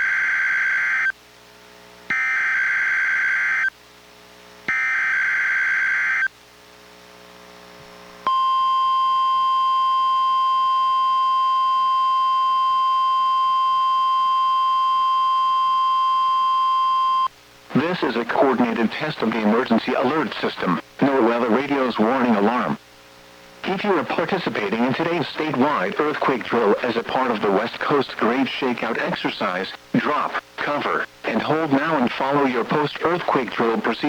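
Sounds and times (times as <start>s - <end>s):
steady warning alarm tone: 0.0s - 1.1s, 2.1s - 3.7s, 4.7s - 6.3s, 8.3s - 17.3s.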